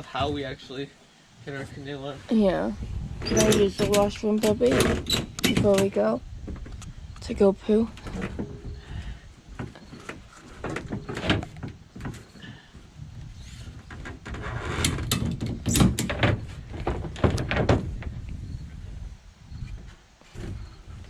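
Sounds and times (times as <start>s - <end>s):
objects knocking and thumping: 8.0s - 12.9s, 13.7s - 18.2s.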